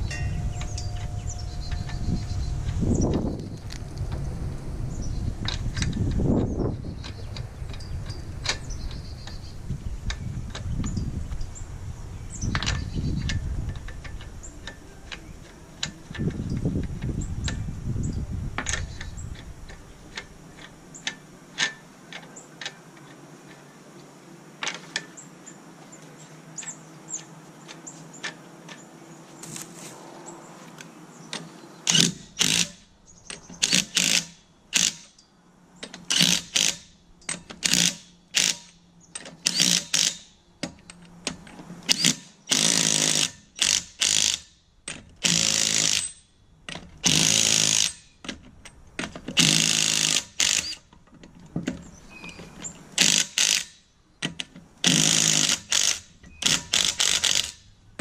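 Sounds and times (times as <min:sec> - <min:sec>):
power tool loud bursts: 0:39.5 - 0:40.3, 0:47.0 - 0:48.1, 0:49.4 - 0:50.8, 0:54.8 - 0:57.6.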